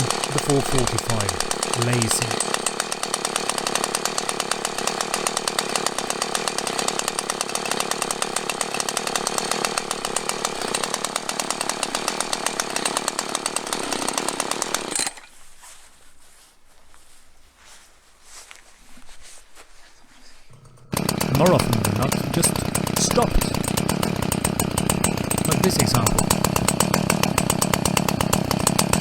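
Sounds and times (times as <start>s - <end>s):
chainsaw running: 0.0s - 15.3s, 20.5s - 29.0s.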